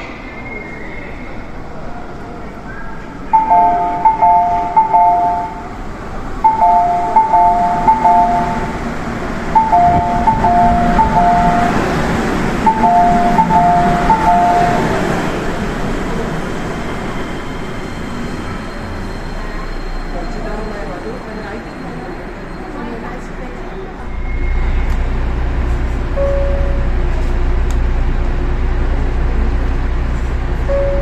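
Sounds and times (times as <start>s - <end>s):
two-tone electronic chime: 3.4s - 5.6s, 6.4s - 8.8s, 9.6s - 11.8s, 12.7s - 14.8s
train motor hum: 3.4s - 16.5s.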